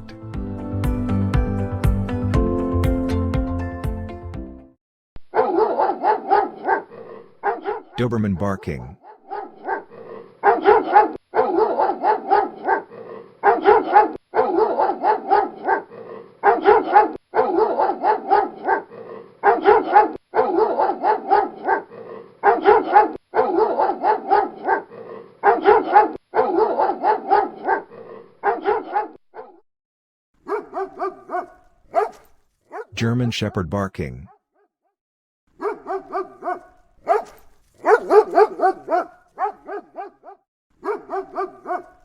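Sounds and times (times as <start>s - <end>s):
dog barking: 5.4s - 8.0s, 9.0s - 29.6s, 30.4s - 32.9s, 35.6s - 42.0s.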